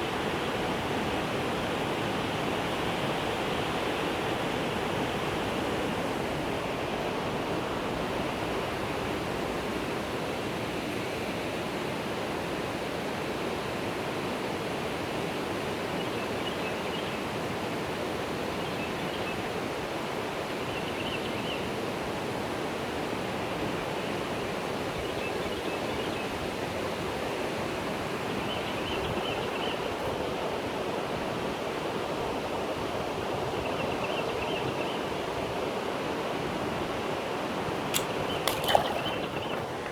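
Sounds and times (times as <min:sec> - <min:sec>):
rushing water: 0:37.5 - 0:39.9.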